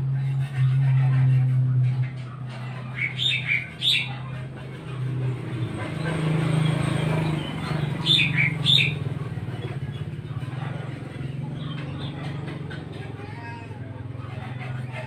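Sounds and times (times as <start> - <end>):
bird chirping: 2.7 - 4.4, 5.6 - 10.2.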